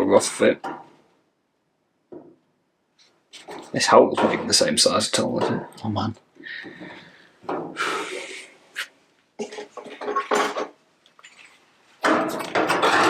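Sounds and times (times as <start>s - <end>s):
metal panel scraping: 12.3s - 13.0s.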